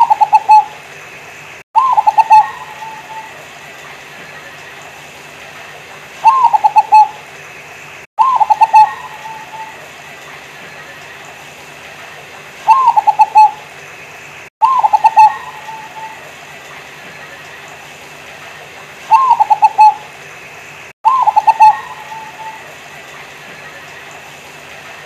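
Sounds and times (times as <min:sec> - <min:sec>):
dove cooing: 0:00.0 - 0:00.8, 0:01.8 - 0:03.4, 0:06.2 - 0:07.2, 0:08.2 - 0:09.8, 0:12.7 - 0:13.6, 0:14.6 - 0:16.3, 0:19.1 - 0:20.0, 0:21.1 - 0:22.8.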